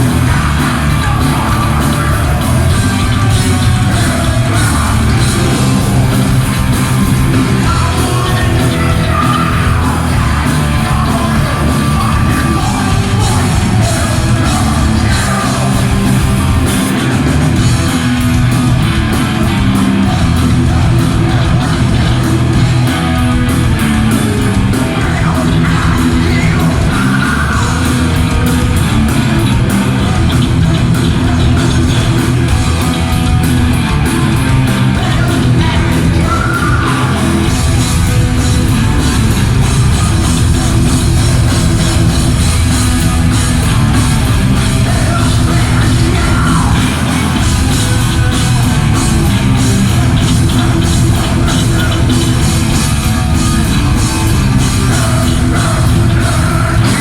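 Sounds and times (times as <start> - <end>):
person singing: 0.0 - 17.2, 24.4 - 28.7, 34.0 - 57.0
heavy metal band playing: 0.0 - 57.0.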